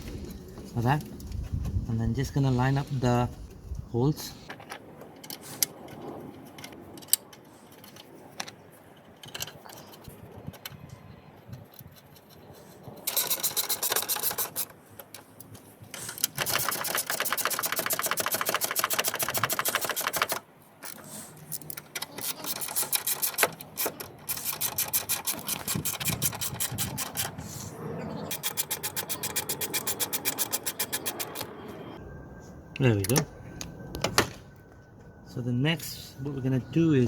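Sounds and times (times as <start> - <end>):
ratchet wrench clicking: 28.3 - 31.5.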